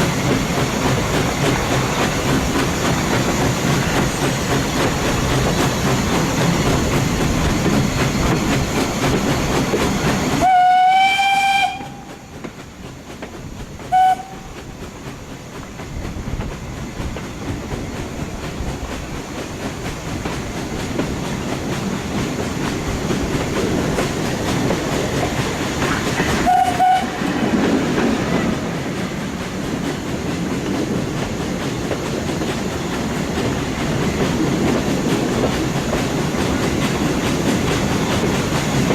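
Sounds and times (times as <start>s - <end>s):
train wheels rumbling on rails: 0.0s - 38.9s
steam whistle: 10.4s - 12.3s, 13.9s - 14.5s, 26.4s - 27.2s.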